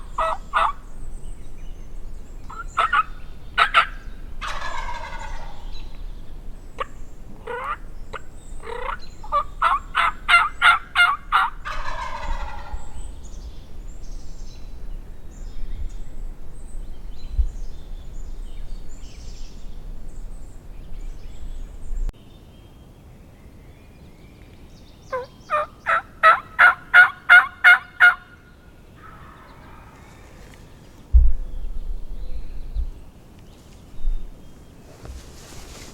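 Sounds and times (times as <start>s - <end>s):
turkey gobble: 0.1s - 0.8s, 2.5s - 5.8s, 6.8s - 7.8s, 8.6s - 13.0s, 25.1s - 28.4s
turkey yelps: 0.2s - 0.8s, 2.5s - 5.7s, 7.4s - 7.8s, 8.6s - 13.0s, 25.1s - 28.3s.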